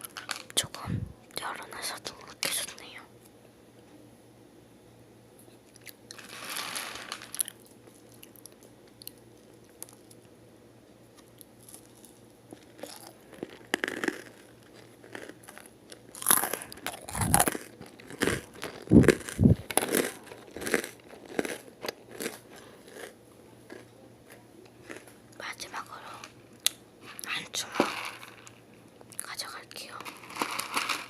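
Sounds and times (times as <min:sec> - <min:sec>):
chewing and crunching cereal: 0:05.6 - 0:10.3, 0:11.1 - 0:31.0.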